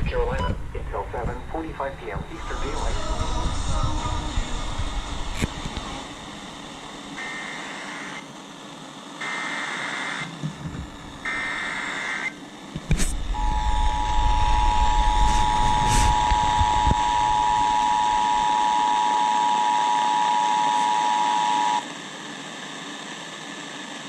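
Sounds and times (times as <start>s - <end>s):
buzzy data tone bursts: 0.0s - 8.3s, 9.2s - 10.3s, 10.9s - 21.8s
two-tone attention signal: 13.4s - 21.8s.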